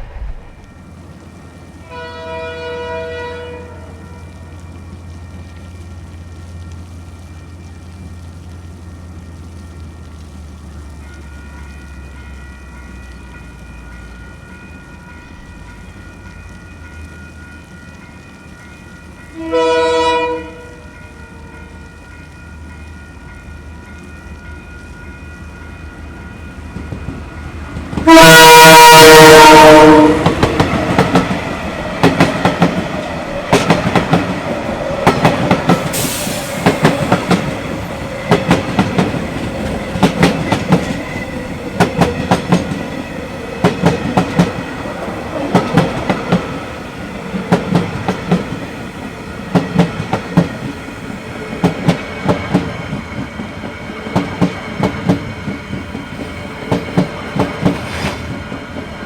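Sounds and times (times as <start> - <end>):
locomotive horn: 1.8 - 4.4, 19.3 - 21.7, 28.0 - 31.0
train wheels clacking over rail joints: 30.2 - 58.6.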